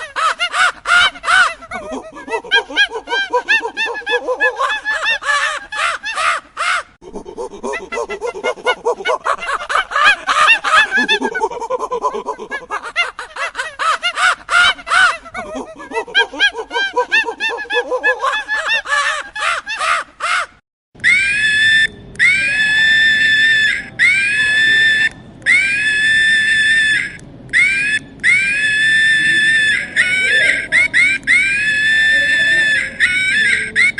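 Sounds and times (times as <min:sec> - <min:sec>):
monkeys chattering and screeching: 0:06.6 - 0:15.2, 0:21.0 - 0:33.9
monkey high-pitched shrieks: 0:21.0 - 0:33.9.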